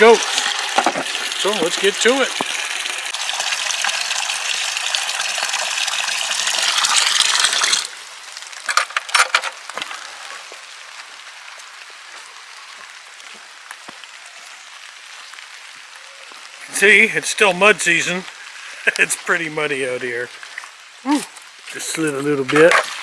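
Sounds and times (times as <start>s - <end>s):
water gushing into bucket: 0.0s - 9.1s, 21.7s - 23.0s.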